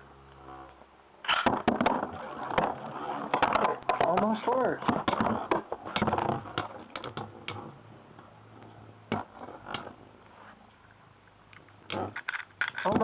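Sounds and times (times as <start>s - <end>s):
spinning tops clicking and knocking: 11.5s - 13.0s.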